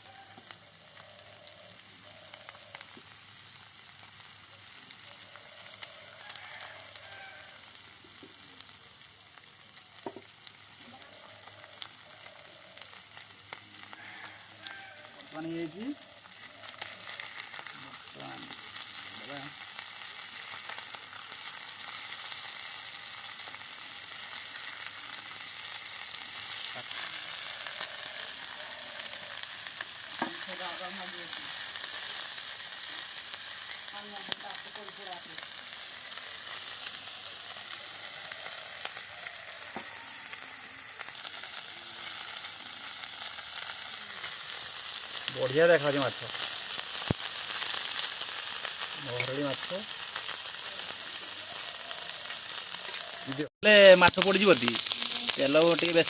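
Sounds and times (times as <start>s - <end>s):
fish frying in hot oil: 0.0s - 56.0s.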